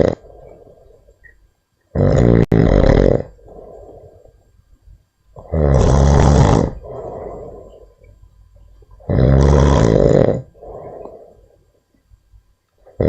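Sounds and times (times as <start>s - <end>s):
monkey snoring: 0.0s - 1.0s, 1.9s - 4.4s, 5.4s - 8.1s, 9.0s - 11.6s
quiet breath: 0.2s - 1.6s, 3.3s - 5.1s, 6.7s - 9.1s, 10.4s - 13.0s.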